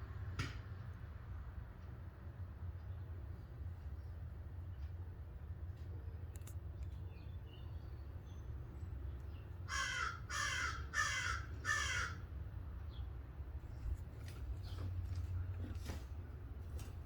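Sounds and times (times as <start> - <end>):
crow cawing: 9.7 - 12.3.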